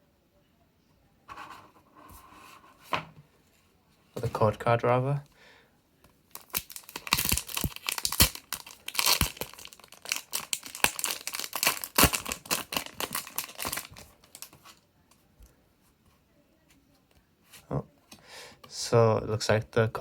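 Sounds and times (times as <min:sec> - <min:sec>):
foil wrapper tearing and crinkling: 0:06.3 - 0:14.6.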